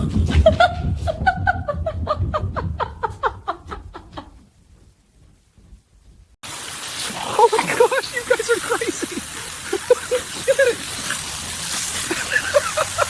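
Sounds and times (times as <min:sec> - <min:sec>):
person laughing: 0:00.1 - 0:04.5, 0:07.1 - 0:13.0.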